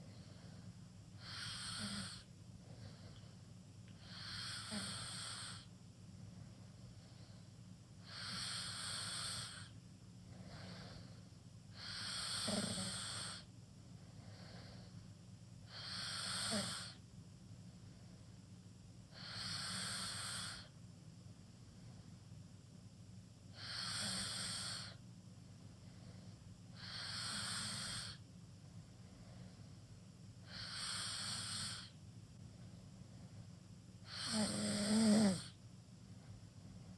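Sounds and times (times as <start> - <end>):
steady low hum: 0.0 - 36.9
person snoring: 1.2 - 2.3, 4.0 - 5.7, 8.0 - 9.7, 11.8 - 13.5, 15.7 - 17.0, 19.2 - 20.7, 23.6 - 25.0, 26.8 - 28.2, 30.4 - 32.0, 34.1 - 35.6.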